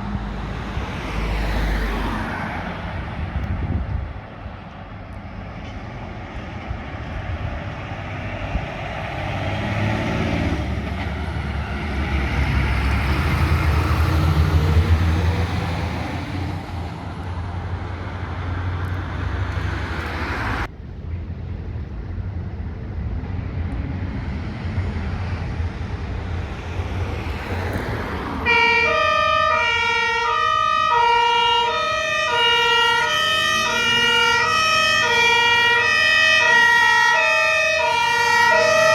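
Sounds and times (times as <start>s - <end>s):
heavy fire engines running: 0.0s - 38.9s
vehicle noise: 0.0s - 38.9s
two-tone fire engine siren: 28.4s - 38.9s.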